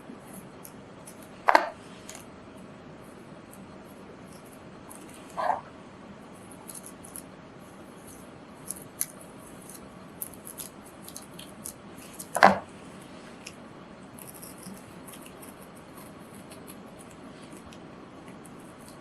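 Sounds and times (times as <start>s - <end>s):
scissors snipping paper: 6.4s - 7.3s, 8.0s - 12.6s, 13.3s - 19.0s
scissors clack: 6.5s - 7.3s, 8.1s - 12.5s.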